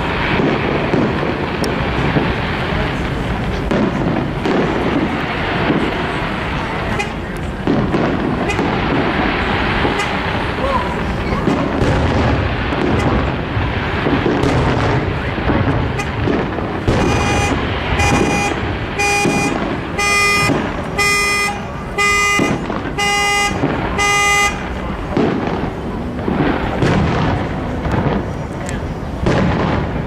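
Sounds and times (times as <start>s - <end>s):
outdoor crowd chatter: 0.0s - 30.0s
vehicle horn honking: 6.9s - 7.3s, 9.8s - 10.3s, 16.9s - 24.8s.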